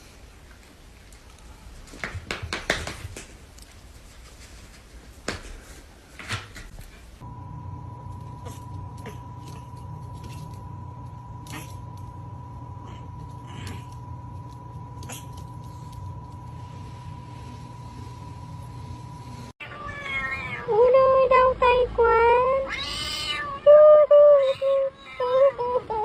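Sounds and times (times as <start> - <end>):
steady low hum: 0.0 - 19.6
cat meowing loudly: 19.6 - 20.7, 22.7 - 23.7.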